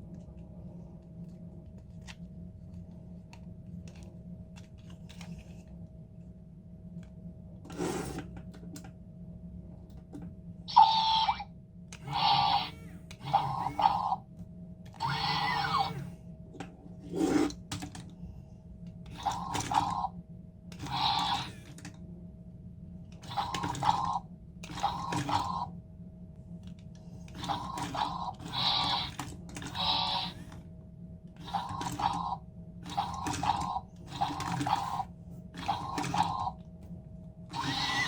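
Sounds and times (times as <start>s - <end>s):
faint steady hum: 0.0s - 38.0s
toy robot motors whirring: 10.7s - 11.4s, 12.0s - 14.2s, 15.0s - 16.2s, 19.1s - 20.1s, 20.7s - 22.0s, 23.2s - 25.7s, 27.3s - 30.6s, 31.4s - 36.6s, 37.5s - 38.0s.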